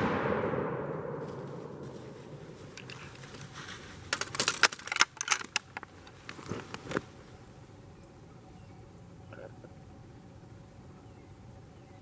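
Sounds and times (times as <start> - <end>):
metal gear clicking and clinking: 4.2 - 5.8.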